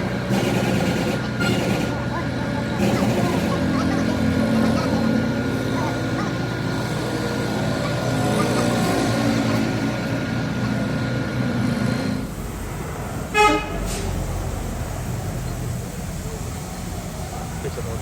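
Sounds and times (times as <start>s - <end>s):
street noise: 0.0s - 18.0s
vehicle horn toot: 13.3s - 14.0s.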